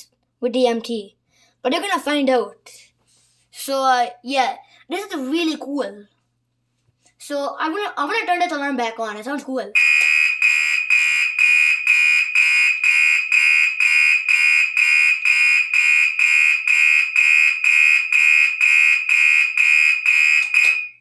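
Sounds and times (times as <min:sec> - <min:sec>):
pulsing fire alarm horn: 0:09.8 - 0:21.0.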